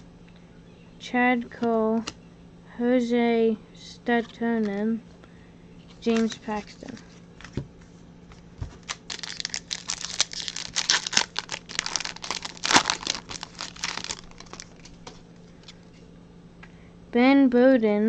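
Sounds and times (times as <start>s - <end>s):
foil wrapper crinkling and tearing: 6.0s - 7.0s, 8.8s - 15.9s.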